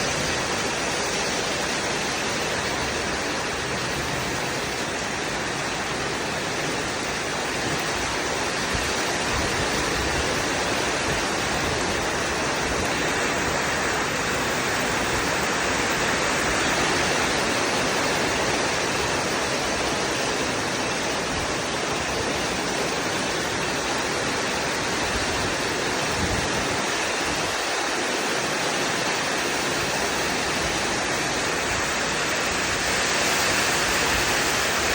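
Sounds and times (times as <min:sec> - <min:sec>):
heavy rain pouring: 0:00.0 - 0:34.9.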